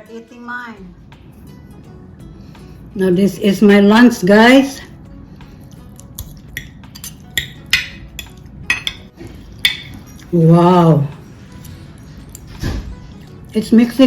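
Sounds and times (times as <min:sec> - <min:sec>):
cutlery clinking on a dish: 0:06.2 - 0:10.3.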